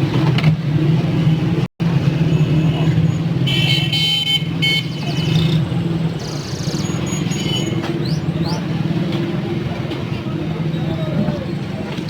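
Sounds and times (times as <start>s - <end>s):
street traffic: 0.0s - 12.0s
vehicle horn honking: 3.4s - 5.4s.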